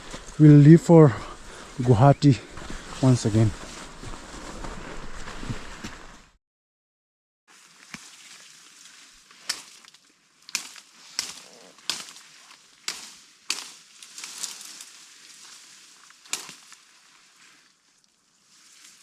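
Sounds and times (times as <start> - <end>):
footsteps on a trail: 0.0 - 6.4
scuffing noise: 0.0 - 6.4.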